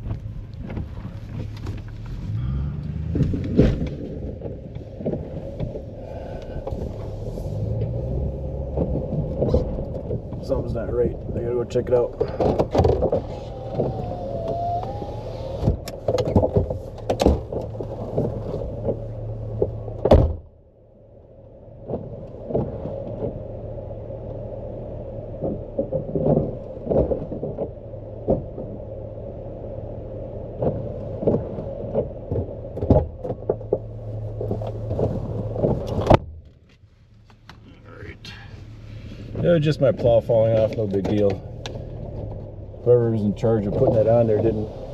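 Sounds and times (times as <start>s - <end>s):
clicks and knocks from cab door: 19.6s - 20.5s
door thump: 20.0s - 20.4s.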